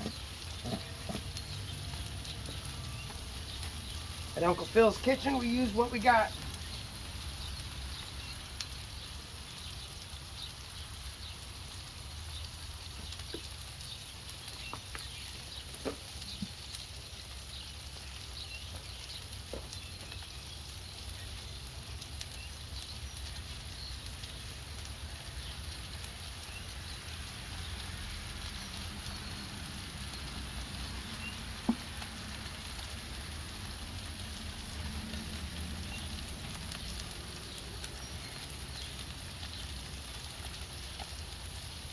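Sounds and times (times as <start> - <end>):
burger sizzling on a griddle: 0.0 - 41.9.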